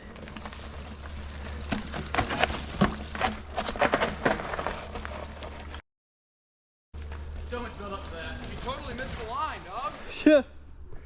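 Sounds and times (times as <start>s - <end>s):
bike metallic clinks and knocks: 0.3s - 4.6s.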